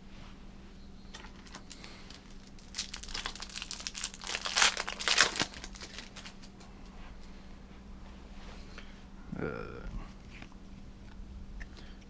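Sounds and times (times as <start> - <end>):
faint steady hum: 0.0 - 12.0
foil wrapper crinkling and tearing: 1.1 - 6.5.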